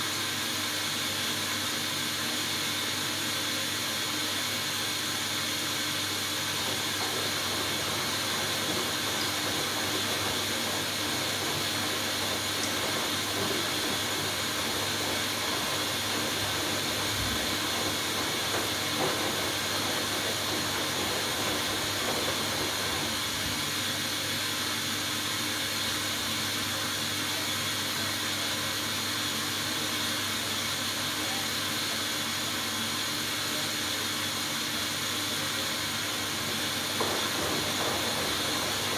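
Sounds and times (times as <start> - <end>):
washing machine water hiss: 0.0 - 38.9.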